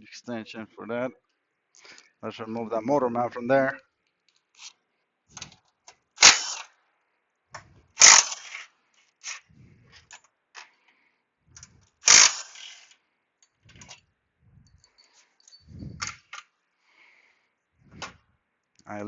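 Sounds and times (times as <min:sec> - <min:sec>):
tools clicking and knocking: 0:11.6 - 0:14.1
impact wrench hammering: 0:12.1 - 0:12.8.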